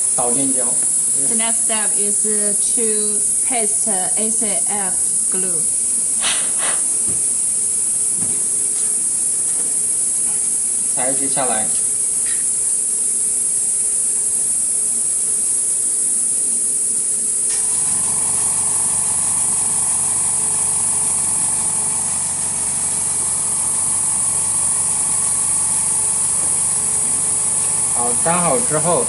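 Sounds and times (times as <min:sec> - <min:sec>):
low mechanical hum: 0:00.0 - 0:29.0
machine hiss: 0:00.0 - 0:29.0.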